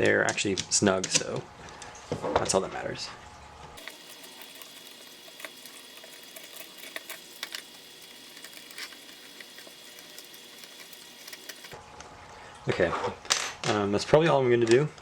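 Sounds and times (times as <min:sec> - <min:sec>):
screws and tools clicking: 0:03.8 - 0:11.8.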